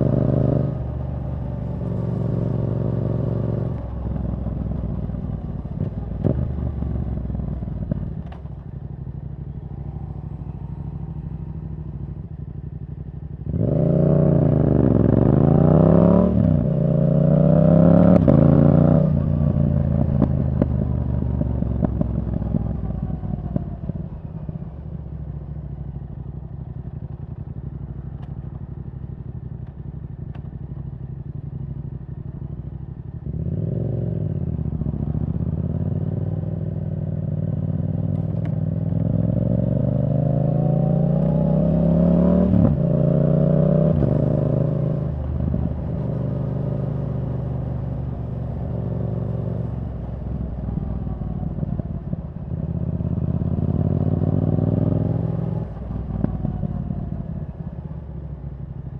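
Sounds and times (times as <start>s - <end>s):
motorcycle engine revving: 0.0s - 25.0s, 31.6s - 58.9s.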